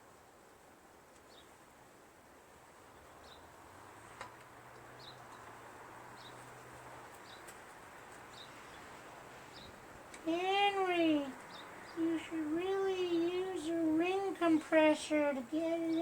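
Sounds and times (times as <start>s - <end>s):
small bird chirping: 7.2s - 7.6s, 8.3s - 14.9s.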